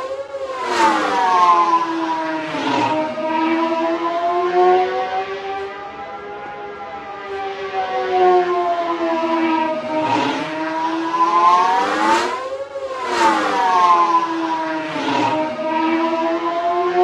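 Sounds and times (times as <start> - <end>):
whining starfighter engine: 0.0 - 17.0.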